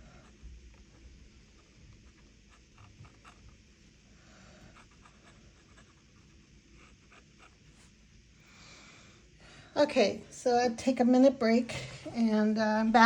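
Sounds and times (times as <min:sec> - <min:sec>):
pen nib scratching paper: 0:01.5 - 0:03.6, 0:04.6 - 0:07.9.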